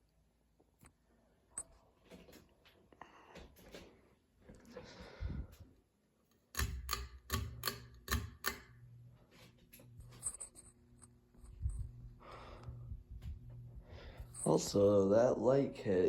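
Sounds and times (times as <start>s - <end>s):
sharp clicks: 6.5s - 8.8s
ceiling fan motor humming: 6.6s - 16.0s.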